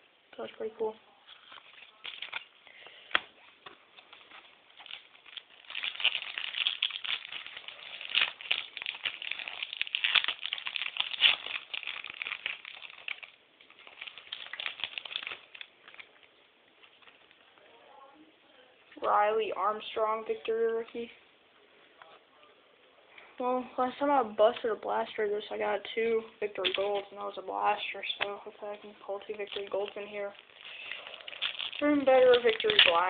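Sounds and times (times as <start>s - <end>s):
wrapper tearing and crinkling: 1.2s - 17.5s, 26.4s - 33.0s.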